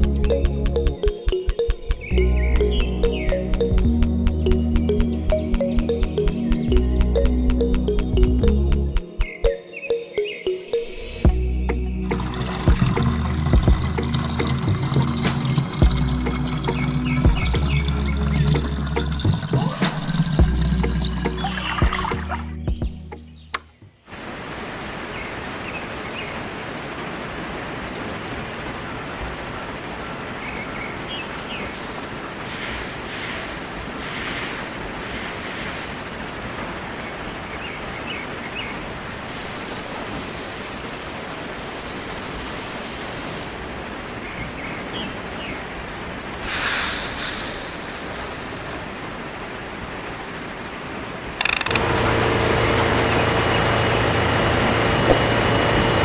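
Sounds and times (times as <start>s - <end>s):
steady hiss: 31.7s - 36.6s, 39.1s - 43.7s, 46.4s - 49.1s.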